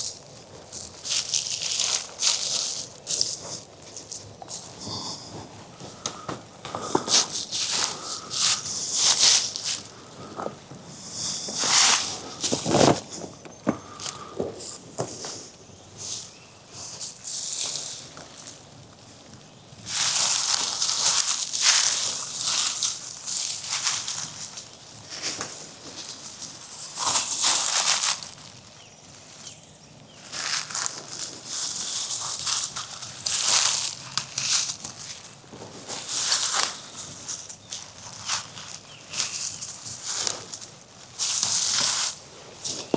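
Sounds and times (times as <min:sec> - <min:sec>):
footsteps crunching dry leaves: 0:00.0 - 0:42.9.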